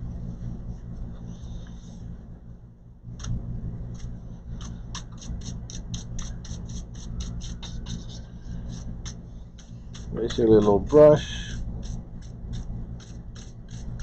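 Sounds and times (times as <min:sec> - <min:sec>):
steady low hum: 0:00.0 - 0:14.0
brush scrubbing inside laptop: 0:04.0 - 0:14.0.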